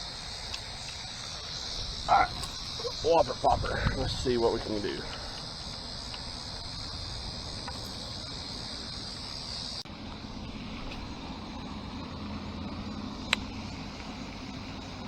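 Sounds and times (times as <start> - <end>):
high-pitched insect chorus: 0.0 - 15.0
low steady hum: 0.0 - 15.0.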